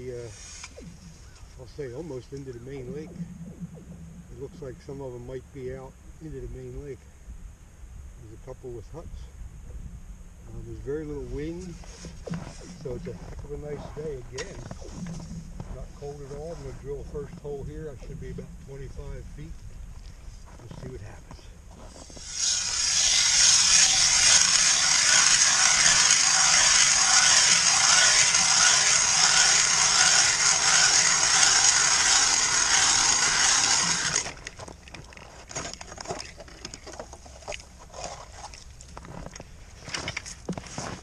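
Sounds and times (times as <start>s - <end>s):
ice auger grinding: 21.7s - 41.0s
ice scrapes and clicks: 34.2s - 41.0s.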